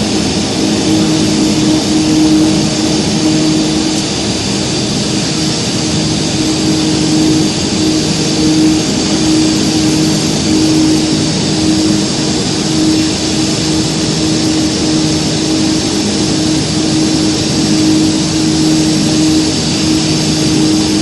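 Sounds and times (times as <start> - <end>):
machine drone: 0.0 - 21.0.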